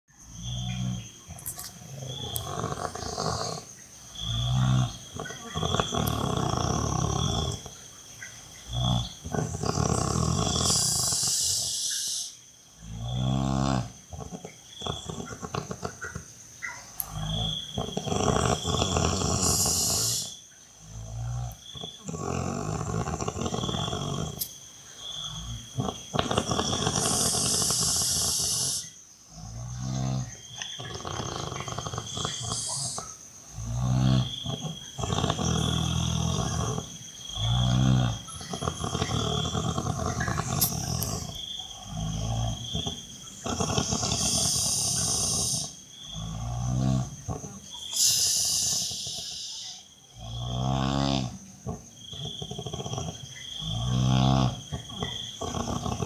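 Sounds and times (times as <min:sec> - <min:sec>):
person snoring: 0:00.4 - 0:07.7, 0:08.7 - 0:16.0, 0:17.0 - 0:24.5, 0:25.2 - 0:56.0
hissing breath: 0:08.9 - 0:12.4, 0:19.3 - 0:20.4, 0:24.0 - 0:29.0, 0:31.9 - 0:36.9, 0:37.5 - 0:45.9, 0:47.8 - 0:49.9.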